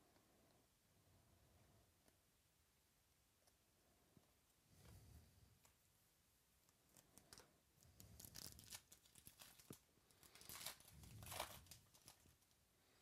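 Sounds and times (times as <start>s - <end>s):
wrappers tearing and crinkling: 8.0s - 12.4s.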